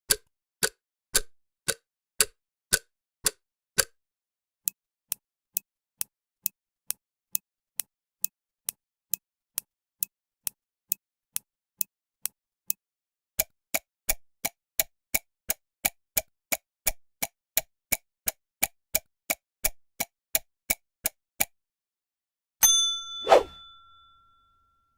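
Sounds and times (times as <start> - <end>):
clock ticking: 0.1 - 4.0.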